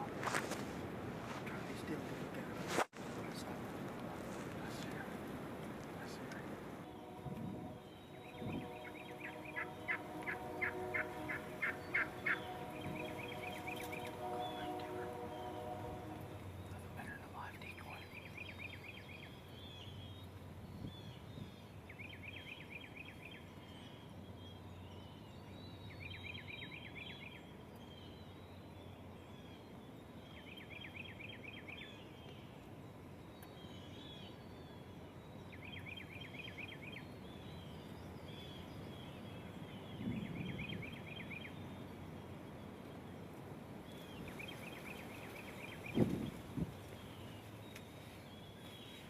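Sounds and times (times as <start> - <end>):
low outdoor rumble: 0.0 - 22.4
faint bird chirps: 6.0 - 42.0
songbird fast trill: 7.7 - 20.2.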